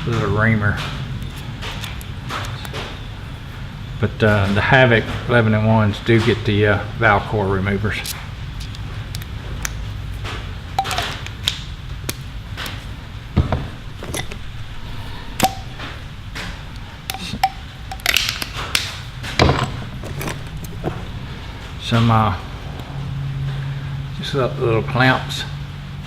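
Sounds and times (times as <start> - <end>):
low hum: 10.6 - 24.1
metal hand tools clinking: 17.1 - 21.1.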